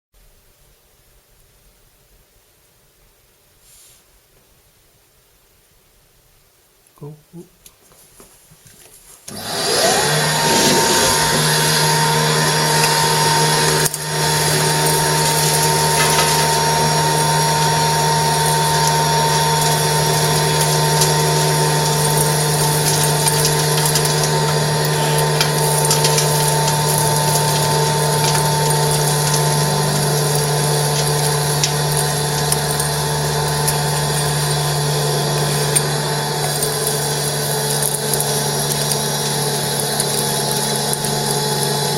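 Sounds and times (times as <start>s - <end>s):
vacuum motor running: 9.3s - 41.9s
debris ticking in vacuum: 10.0s - 41.9s.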